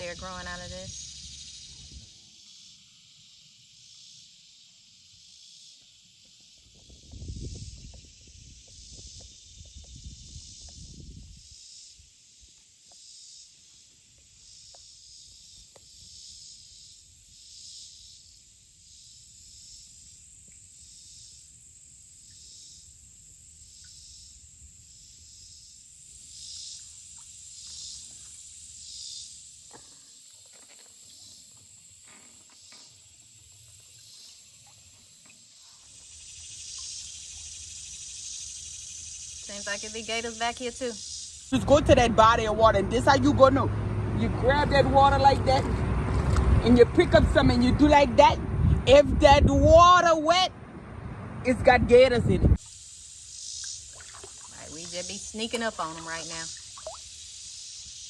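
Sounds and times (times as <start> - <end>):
insect drone: 0.0 - 48.3, 52.6 - 58.0
high pulsing insect call: 0.0 - 50.4, 52.5 - 58.0
low rumble: 41.8 - 49.8.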